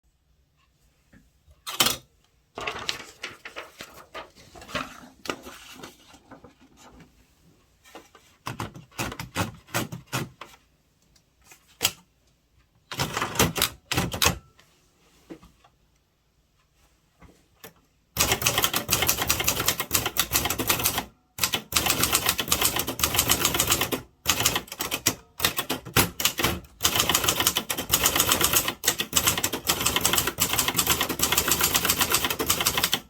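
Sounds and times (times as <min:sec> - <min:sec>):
typewriter keys clacking: 0:18.2 - 0:33.0.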